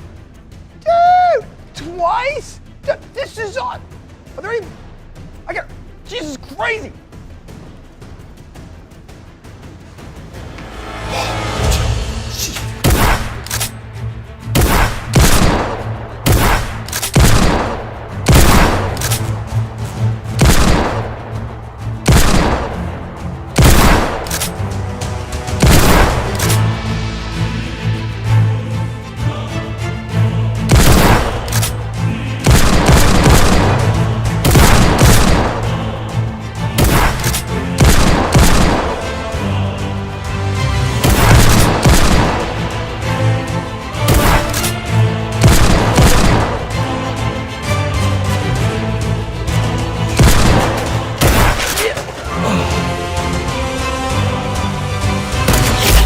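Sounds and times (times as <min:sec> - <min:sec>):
background music with bass: 0:00.0 - 0:56.0
gunfire volleys: 0:12.5 - 0:13.8, 0:14.6 - 0:19.4, 0:20.4 - 0:21.4, 0:22.0 - 0:23.0, 0:23.6 - 0:24.6, 0:25.6 - 0:26.7, 0:30.7 - 0:31.8, 0:32.4 - 0:35.8, 0:36.8 - 0:39.1, 0:41.0 - 0:42.6, 0:44.1 - 0:44.8, 0:45.4 - 0:46.8, 0:50.2 - 0:52.2
gunshots with booms: 0:12.7 - 0:13.7, 0:14.5 - 0:24.7, 0:25.4 - 0:26.7, 0:30.6 - 0:36.1, 0:36.7 - 0:39.3, 0:41.0 - 0:43.1, 0:44.0 - 0:46.9, 0:50.0 - 0:52.2.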